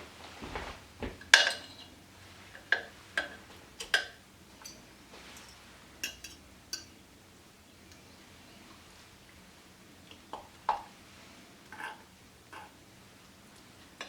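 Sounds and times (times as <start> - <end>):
utensils clinking against dishes: 1.2 - 7.0.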